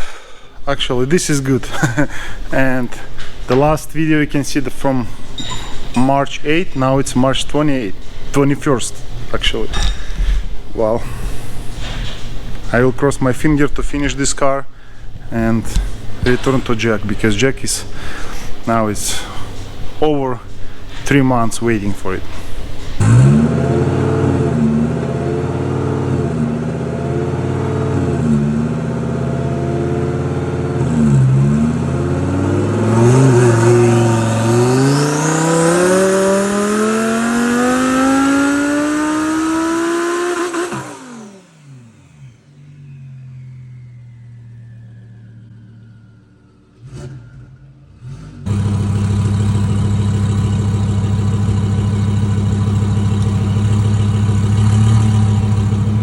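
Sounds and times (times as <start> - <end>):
car engine revving: 6.4 - 56.0.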